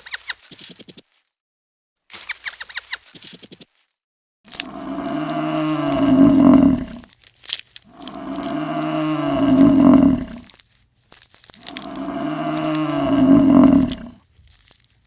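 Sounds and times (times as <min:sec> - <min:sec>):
cow mooing: 0:04.5 - 0:07.1, 0:07.9 - 0:10.5, 0:11.6 - 0:14.2.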